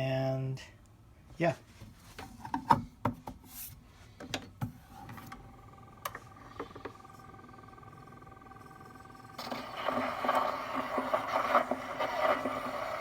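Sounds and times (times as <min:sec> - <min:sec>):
phonograph motor whine: 0:04.8 - 0:13.0.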